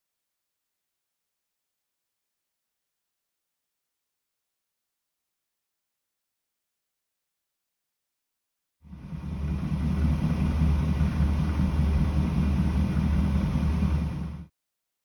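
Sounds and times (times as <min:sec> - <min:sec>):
tumble dryer rumbling: 0:08.8 - 0:14.5.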